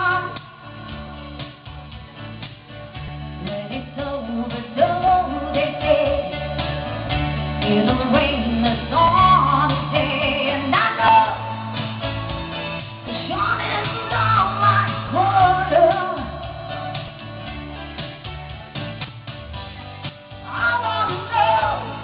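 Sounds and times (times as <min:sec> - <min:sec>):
live rock band: 0:00.0 - 0:22.0
person singing: 0:03.4 - 0:06.9, 0:07.6 - 0:12.1, 0:20.5 - 0:22.0.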